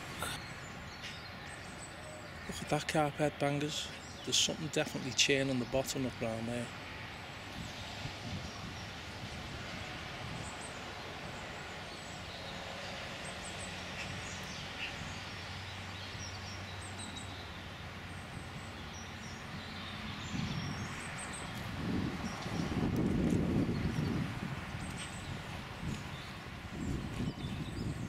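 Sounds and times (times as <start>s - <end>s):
outdoor background noise: 0.0s - 28.0s.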